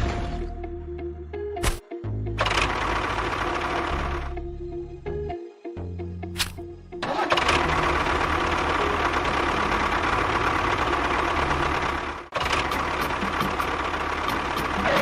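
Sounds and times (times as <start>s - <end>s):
motor running with rattly noise: 7.5s - 15.0s.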